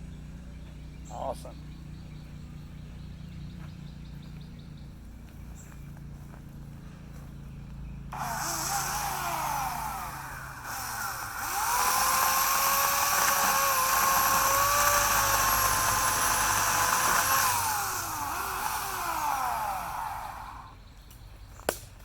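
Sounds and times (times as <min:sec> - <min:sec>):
electric chainsaw motor whine: 0:08.1 - 0:20.8.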